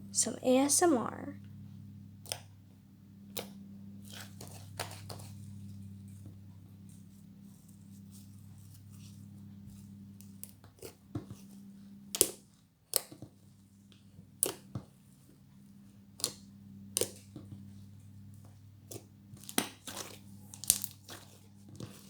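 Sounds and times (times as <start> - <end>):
steady low hum: 0.0 - 10.7
slime squished by hand: 18.9 - 22.0.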